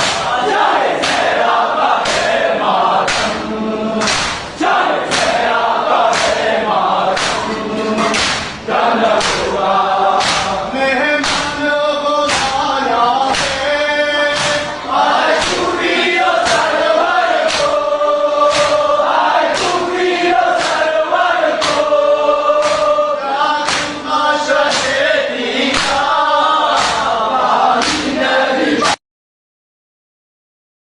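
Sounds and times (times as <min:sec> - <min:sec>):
sharp regular beat: 0:00.0 - 0:28.2
voices chanting in chorus: 0:00.0 - 0:29.0.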